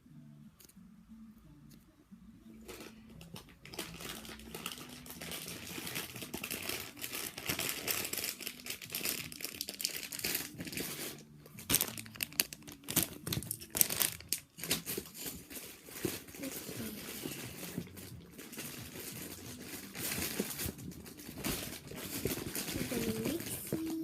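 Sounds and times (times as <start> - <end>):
packaging crinkling and rustling: 2.6 - 24.0.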